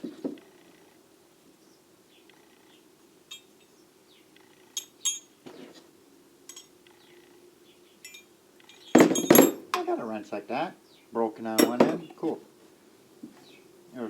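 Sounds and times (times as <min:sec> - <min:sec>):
steel wrenches clinking: 0:03.3 - 0:03.7, 0:04.7 - 0:05.4, 0:06.5 - 0:06.8, 0:08.0 - 0:09.9, 0:11.6 - 0:12.1.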